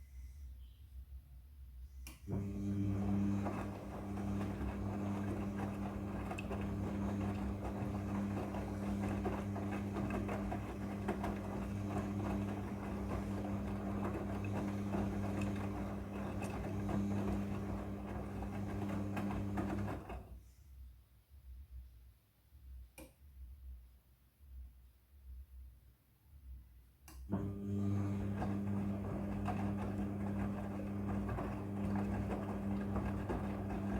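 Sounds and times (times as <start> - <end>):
washing machine running: 2.3 - 20.4, 27.3 - 33.9.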